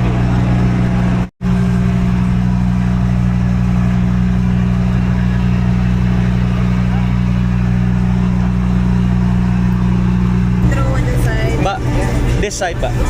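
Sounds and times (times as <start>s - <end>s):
ferry engines low drone: 0.0s - 13.0s.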